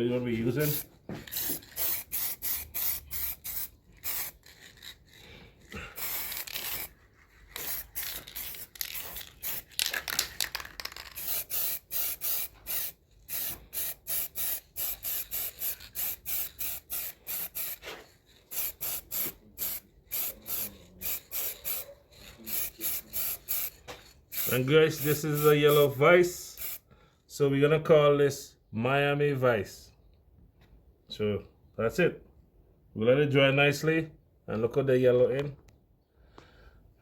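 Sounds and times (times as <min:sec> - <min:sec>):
spray paint can hissing: 0:00.6 - 0:26.8.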